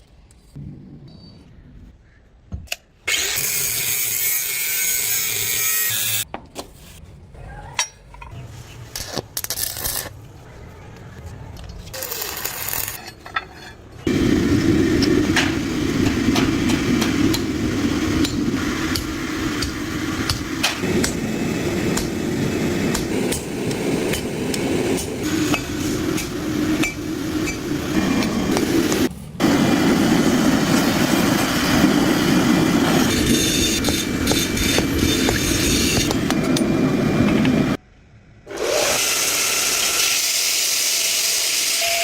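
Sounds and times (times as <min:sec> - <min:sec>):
low rushing noise: 0:14.1 - 0:38.3
hammer striking steel on anvil: 0:21.9 - 0:22.1.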